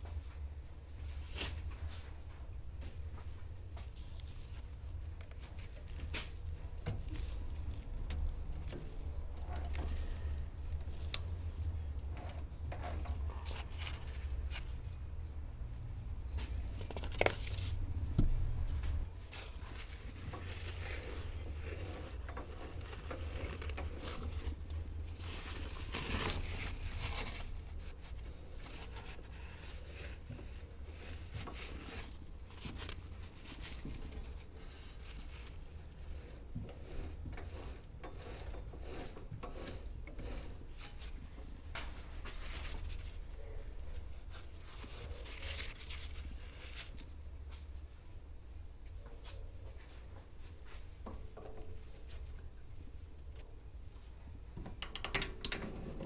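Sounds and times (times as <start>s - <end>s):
steady low hum: 0.0s - 54.6s
rubbing and scraping strokes: 15.8s - 47.2s.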